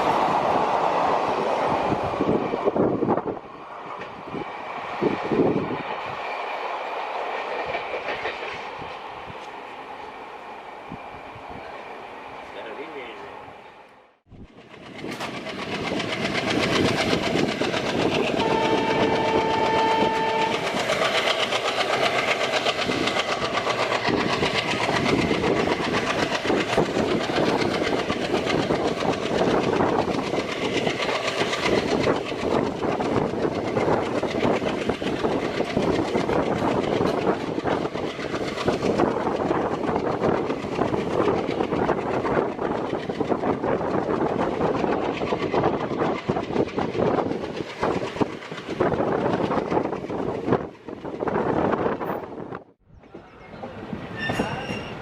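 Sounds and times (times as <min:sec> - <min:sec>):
train wheels clicking over rail joints: 0:03.8 - 0:09.7, 0:14.4 - 0:52.0
train horn: 0:18.3 - 0:20.7.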